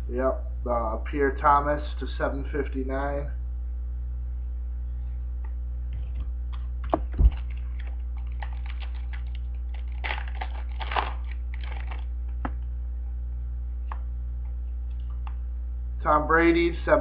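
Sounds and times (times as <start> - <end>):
electrical hum: 0.0 - 17.0
cards and wrappers rustling: 6.9 - 12.1.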